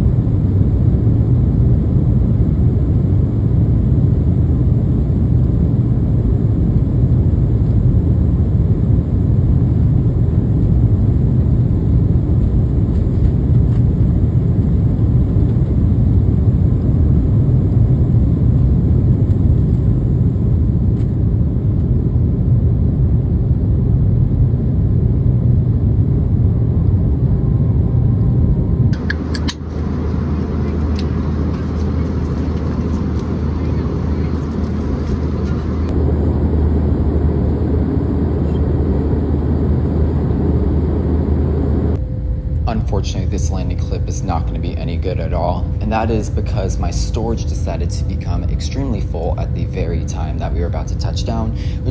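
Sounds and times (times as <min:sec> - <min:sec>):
airliner cabin engine rumble: 0:00.0 - 0:51.9.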